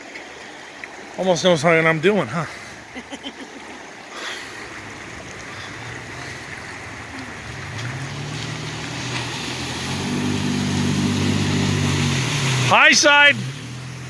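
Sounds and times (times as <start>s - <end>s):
running water rushing: 0.0s - 14.0s
off-road vehicle engine revving: 4.6s - 14.0s.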